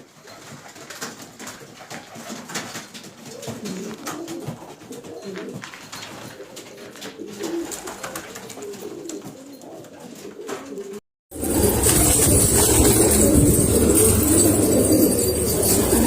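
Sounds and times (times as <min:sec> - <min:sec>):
pigeons cooing: 0:01.6 - 0:16.0
loud rushing noise: 0:11.3 - 0:16.0.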